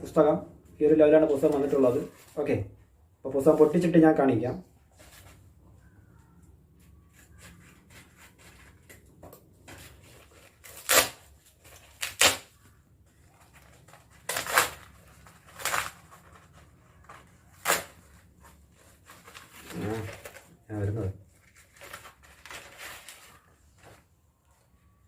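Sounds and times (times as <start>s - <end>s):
handling of packaging: 6.8s - 24.9s
packaging tearing: 10.2s - 12.6s, 13.5s - 18.2s, 19.0s - 20.5s.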